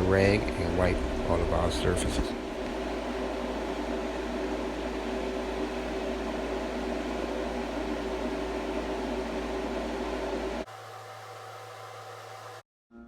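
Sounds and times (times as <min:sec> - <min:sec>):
machine humming: 0:00.0 - 0:12.6.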